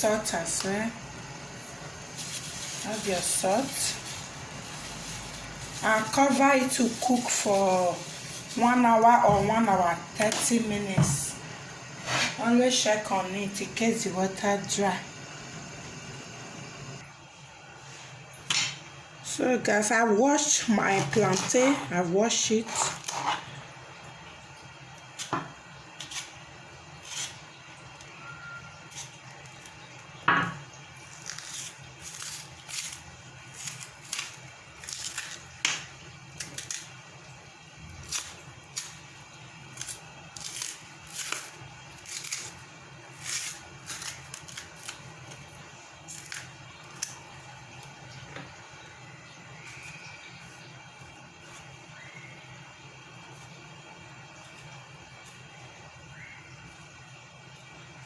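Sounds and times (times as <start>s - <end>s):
low hum: 9.6s - 17.8s.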